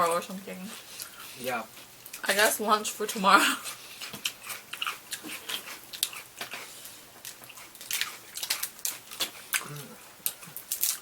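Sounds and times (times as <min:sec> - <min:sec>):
wet chewing and lip smacking: 0:03.6 - 0:11.0.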